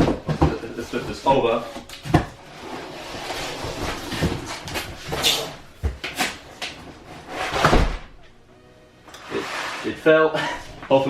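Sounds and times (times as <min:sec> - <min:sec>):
cardboard scraping and rustling: 0:00.0 - 0:08.0.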